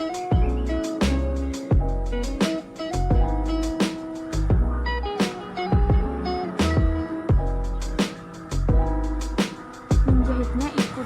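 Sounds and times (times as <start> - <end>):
plucked string notes: 0.0 - 10.7
deep bass line: 0.3 - 2.4, 3.0 - 10.7.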